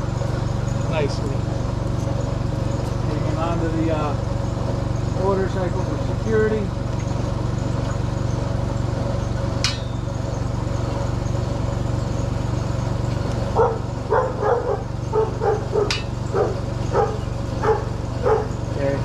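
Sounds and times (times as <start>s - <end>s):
steady low hum: 0.0s - 19.0s
dog barking: 13.5s - 18.6s.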